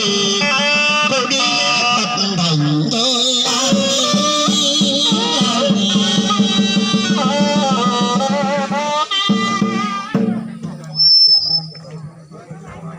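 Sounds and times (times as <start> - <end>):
quick drum beat: 3.4 - 10.8.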